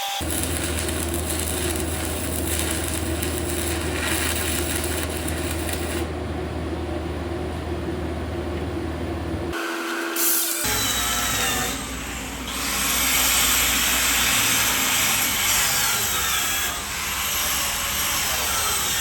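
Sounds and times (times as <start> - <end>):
welding hiss: 0.0 - 6.1, 10.2 - 19.0
welder engine running: 0.2 - 9.6, 10.7 - 19.0.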